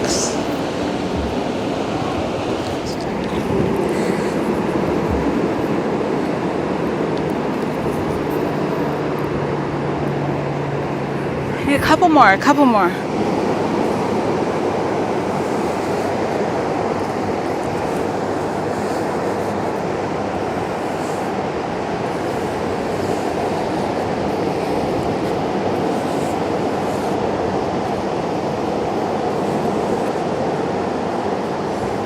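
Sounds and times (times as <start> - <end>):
ocean surf: 0.0 - 32.0
wind at shore: 0.0 - 32.0.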